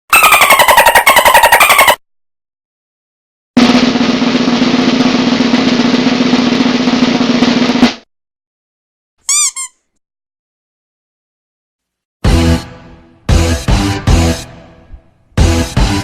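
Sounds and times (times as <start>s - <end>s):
snare drum roll: 3.6s - 8.1s.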